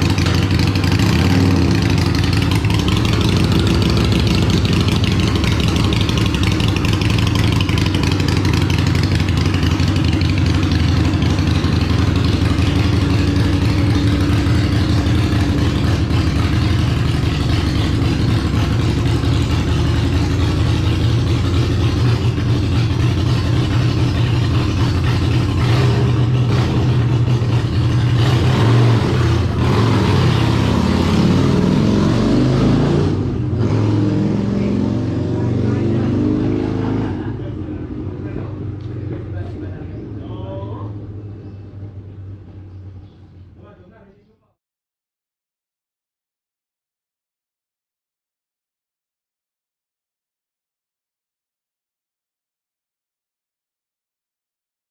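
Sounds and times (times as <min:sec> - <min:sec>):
motorcycle engine running and revving: 0:00.0 - 0:43.6.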